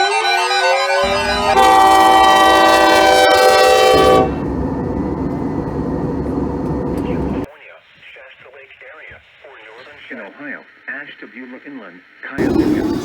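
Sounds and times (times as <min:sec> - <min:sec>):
locomotive air horn blast: 0:01.0 - 0:07.4
passing train rumble: 0:01.0 - 0:07.5.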